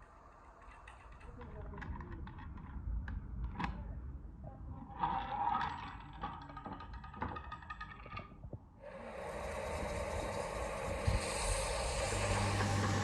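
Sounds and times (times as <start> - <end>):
power tool running: 8.9 - 13.0.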